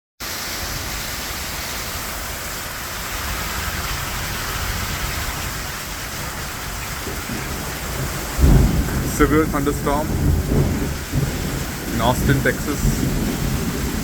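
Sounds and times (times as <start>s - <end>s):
heavy rain pouring: 0.2s - 14.0s
strong wind rumble: 3.1s - 14.0s.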